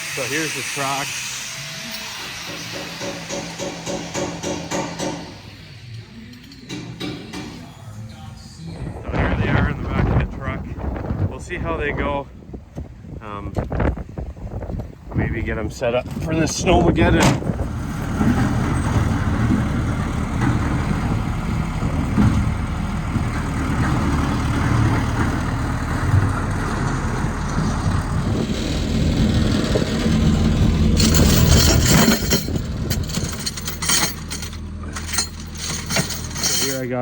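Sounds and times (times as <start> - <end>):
vehicle engine idling: 17.6 - 37.0.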